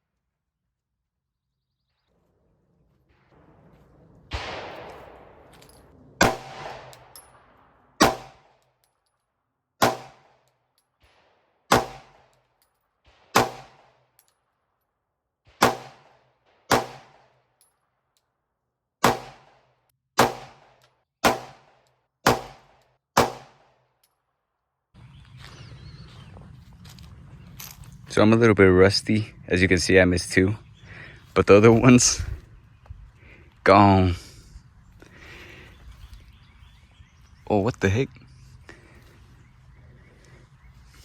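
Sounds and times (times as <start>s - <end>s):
gunshots: 3.2s - 8.6s, 9.8s - 10.4s, 11.1s - 12.3s, 13.1s - 14.0s, 15.5s - 17.3s, 19.0s - 23.7s.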